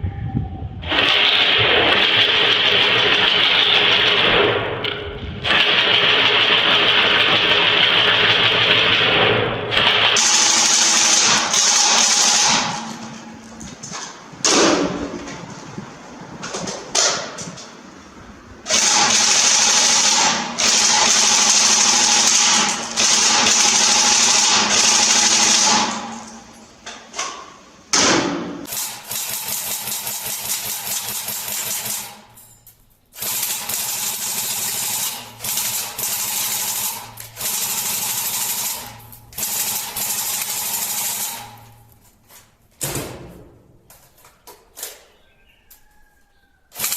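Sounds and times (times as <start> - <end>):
airsoft gun firing bursts: 0.9 - 4.8, 5.4 - 13.0, 18.7 - 26.1, 28.0 - 32.3, 33.2 - 41.7.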